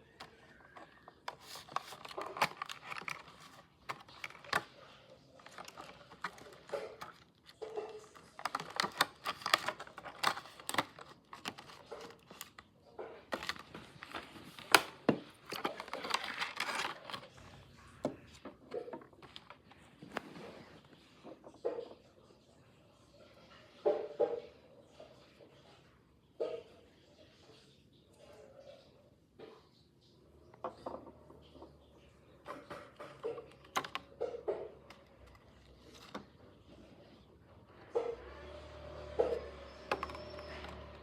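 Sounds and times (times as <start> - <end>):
packaging crinkling and tearing: 0.0 - 12.7, 13.3 - 17.5.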